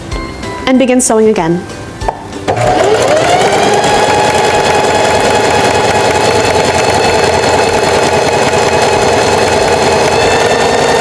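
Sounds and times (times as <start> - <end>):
sewing machine whining: 2.5 - 11.0.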